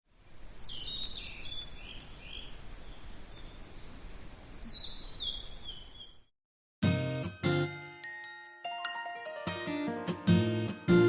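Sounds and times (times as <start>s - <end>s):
insect drone: 0.0s - 6.3s
birds whistling: 4.6s - 6.2s.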